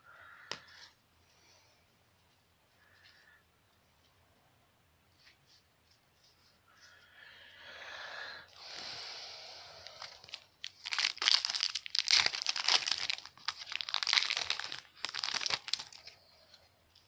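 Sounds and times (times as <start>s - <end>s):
foil wrapper tearing and crackling: 10.0s - 16.1s.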